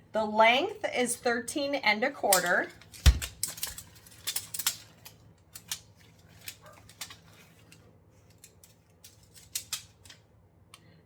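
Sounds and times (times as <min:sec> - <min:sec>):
filter and tape being handled: 0:02.4 - 0:10.3.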